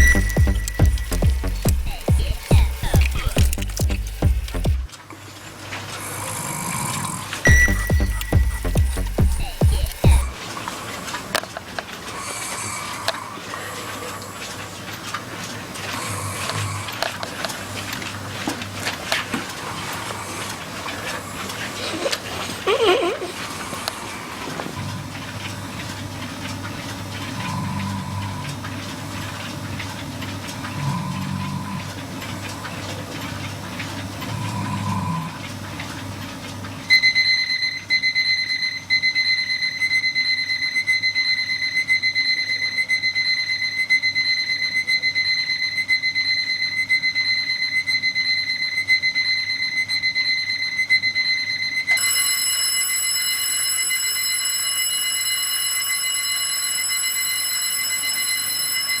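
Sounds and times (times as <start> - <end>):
high electronic alarm tone: 0.0 - 4.9, 7.5 - 10.4, 36.9 - 59.0
lower alarm clock tone: 0.0 - 4.9, 7.4 - 10.4, 36.9 - 59.0.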